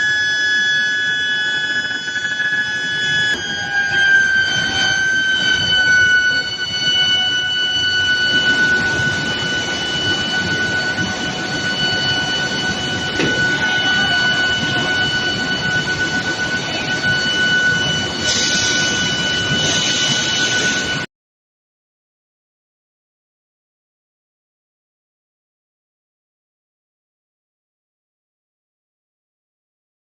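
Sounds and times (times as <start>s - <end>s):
continuous mechanical noise: 0.0s - 21.1s
high-pitched electrical whine: 0.0s - 21.1s.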